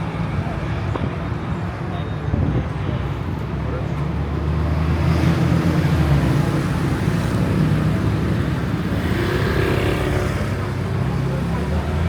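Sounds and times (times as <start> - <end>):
vehicle engines running: 3.2 - 12.0.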